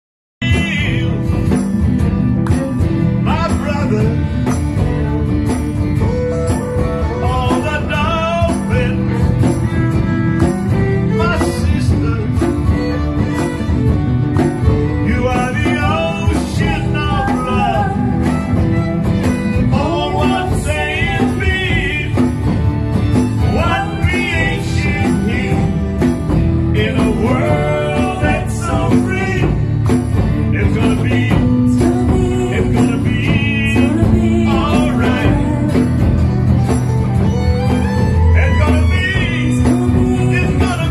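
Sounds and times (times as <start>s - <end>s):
instrumental accompaniment with beat: 0.4s - 40.9s
person singing with vibrato: 15.0s - 18.8s, 19.5s - 22.4s, 23.4s - 26.1s, 26.7s - 29.7s, 30.4s - 36.4s, 38.2s - 40.9s.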